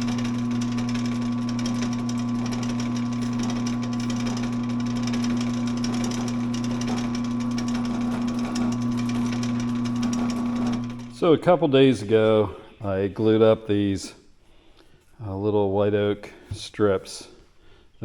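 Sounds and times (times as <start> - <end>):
electric motor humming: 0.0 - 11.3.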